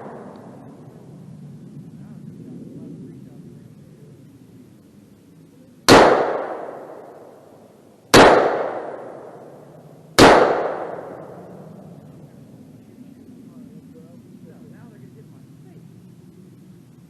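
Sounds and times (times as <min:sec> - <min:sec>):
rifle shots with echo: 0:00.0 - 0:00.8, 0:05.9 - 0:11.8.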